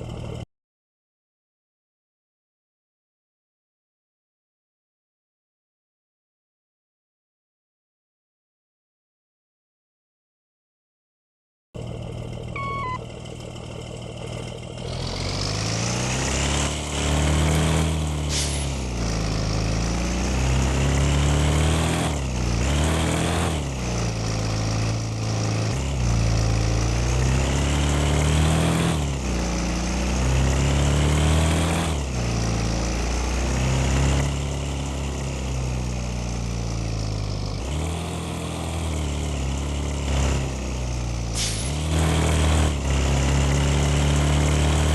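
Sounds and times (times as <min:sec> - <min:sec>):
engine whine: 0:11.8 - 0:16.8
bus engine revving: 0:12.6 - 0:44.9.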